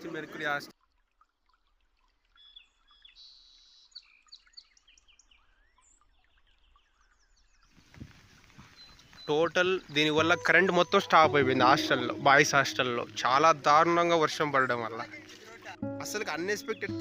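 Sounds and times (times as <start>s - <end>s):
birds chirping: 2.3s - 17.0s.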